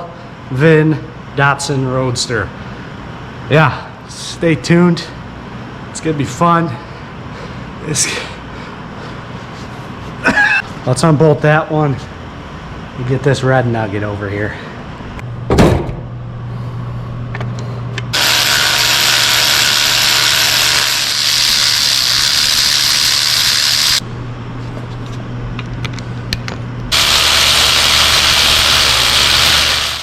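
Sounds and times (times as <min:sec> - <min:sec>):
steady low hum: 0:00.0 - 0:30.0
power tool running: 0:18.1 - 0:24.0, 0:26.9 - 0:30.0.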